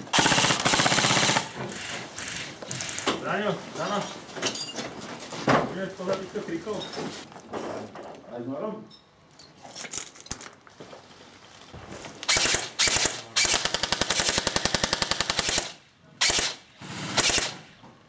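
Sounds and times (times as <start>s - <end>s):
airsoft rifle firing bursts: 0.0s - 3.0s, 12.3s - 17.6s.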